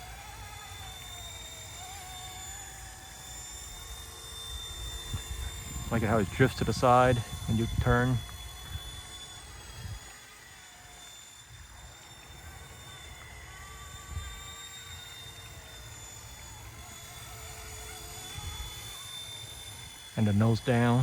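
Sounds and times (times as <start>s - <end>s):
toy helicopter rotor whine: 0.0s - 21.0s
wind rumble on microphone: 4.7s - 9.1s.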